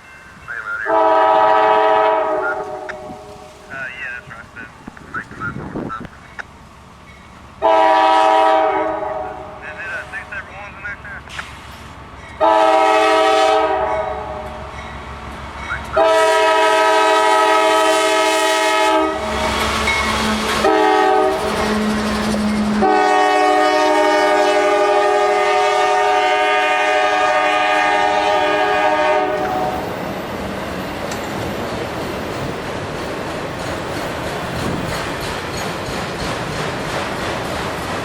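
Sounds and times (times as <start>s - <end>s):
passing train rumble: 0.0s - 38.0s
locomotive air horn: 0.8s - 3.5s, 7.6s - 9.7s, 12.4s - 14.6s, 16.0s - 29.9s.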